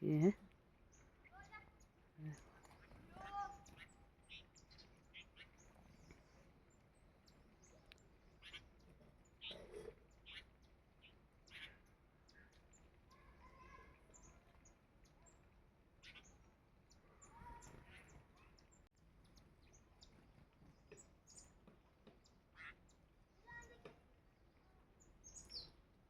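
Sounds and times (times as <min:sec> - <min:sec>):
small birds chirping: 0:00.0 - 0:26.0.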